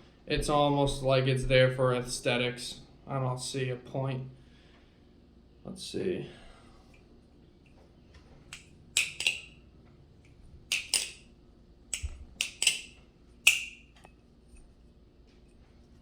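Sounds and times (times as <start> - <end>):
metallic clacks of folding knife: 8.5 - 9.6, 10.7 - 11.2, 12.0 - 14.1.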